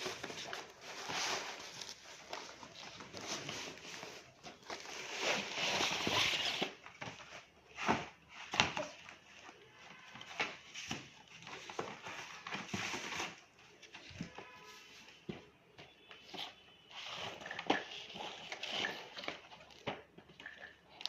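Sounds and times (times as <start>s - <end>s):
packaging rustling and tearing: 0.0s - 14.6s.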